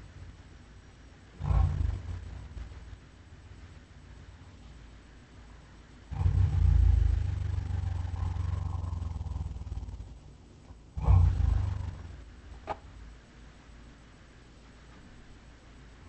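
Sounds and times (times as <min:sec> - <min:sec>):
deep beast growl: 0:01.4 - 0:03.0, 0:06.1 - 0:10.2, 0:11.0 - 0:12.3.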